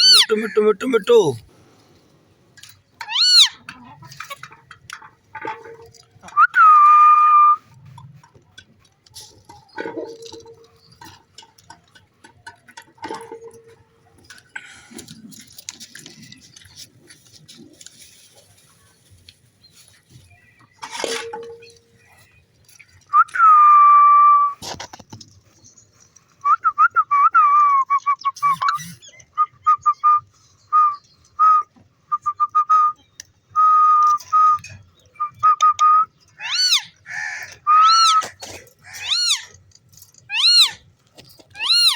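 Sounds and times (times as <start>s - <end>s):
person whistling: 6.4s - 7.6s, 23.1s - 24.6s, 26.4s - 28.7s, 33.6s - 36.1s.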